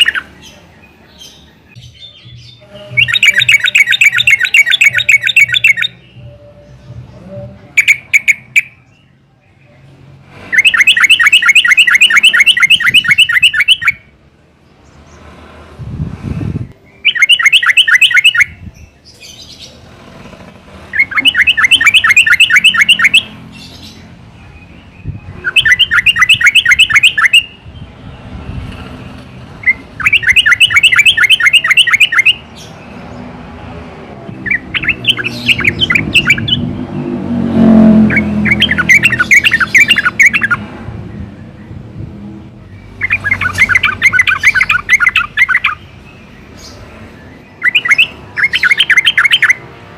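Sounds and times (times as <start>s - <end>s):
bird singing bubbling chattering notes: 3.0s - 6.0s, 10.5s - 14.0s, 20.9s - 23.3s, 25.3s - 27.6s, 29.6s - 32.4s, 34.4s - 36.6s, 38.1s - 40.6s, 42.8s - 46.3s, 47.5s - 49.6s.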